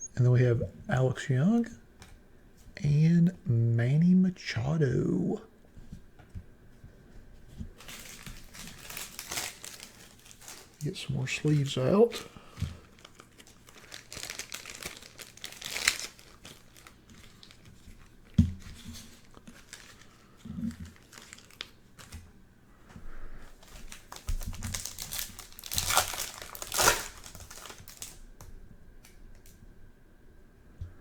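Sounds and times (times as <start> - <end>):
plastic packaging crinkling: 7.7 - 22.3, 23.5 - 28.3.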